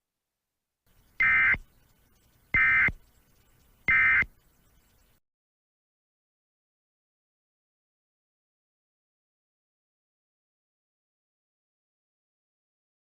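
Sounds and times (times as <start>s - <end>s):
buzzy electronic data bursts: 1.2s - 1.6s, 2.6s - 3.0s.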